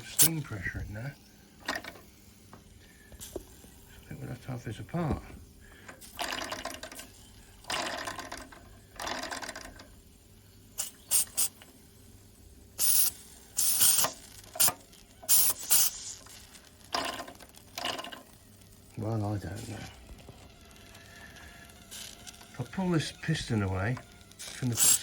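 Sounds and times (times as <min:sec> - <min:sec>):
steam hissing from toy engine: 0:00.0 - 0:01.5, 0:02.1 - 0:25.0
small mechanical clicks: 0:05.8 - 0:10.1, 0:12.8 - 0:18.8, 0:19.8 - 0:25.0.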